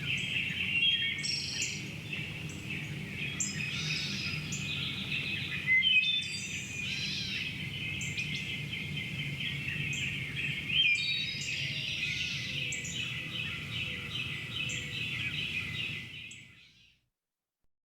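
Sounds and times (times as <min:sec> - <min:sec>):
birds chirping and trilling: 0:00.0 - 0:17.0.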